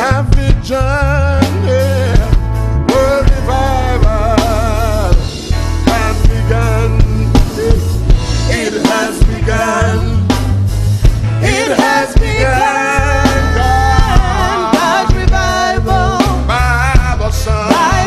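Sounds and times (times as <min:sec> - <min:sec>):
band with drums and bass: 0:00.0 - 0:18.0
person singing with vibrato: 0:11.4 - 0:18.0.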